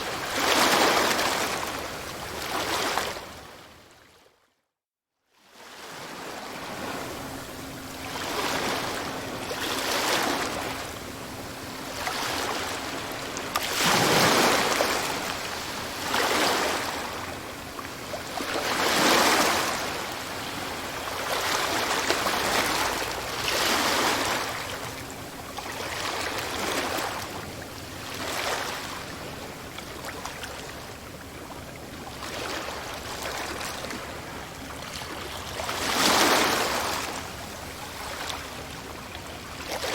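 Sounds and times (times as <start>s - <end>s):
sea waves washing onto shore: 6.2s - 31.0s.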